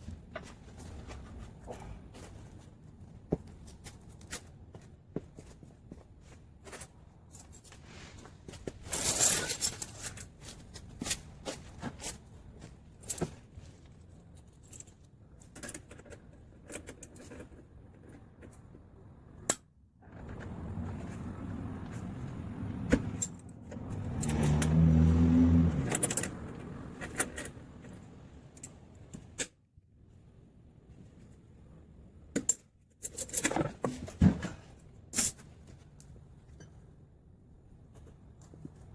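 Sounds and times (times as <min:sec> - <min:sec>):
metal tools clinking: 0:08.9 - 0:10.3.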